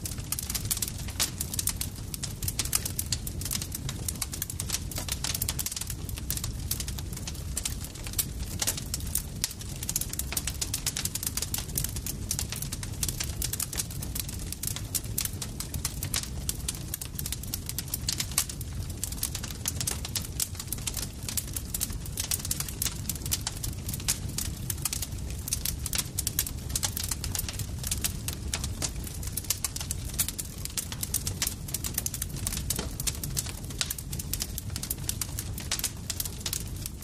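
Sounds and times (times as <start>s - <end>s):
campfire crackling: 0.0s - 37.0s
low rumble of burning fire: 0.0s - 37.0s.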